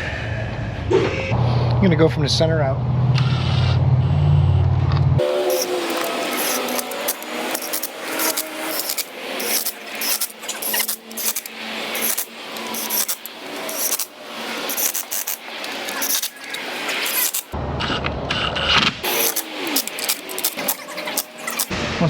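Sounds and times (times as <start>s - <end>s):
metallic clicks of bolts and tools: 5.5s - 17.6s, 19.0s - 21.7s.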